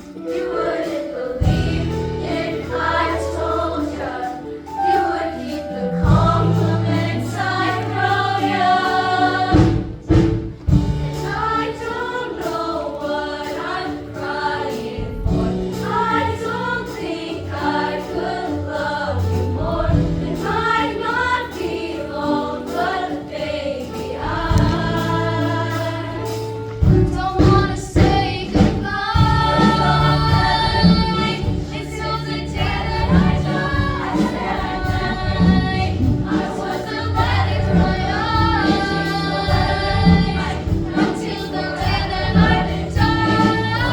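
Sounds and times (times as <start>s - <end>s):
gospel choir singing: 0.0s - 43.9s
band with bass and beat: 9.3s - 11.6s, 24.4s - 43.9s.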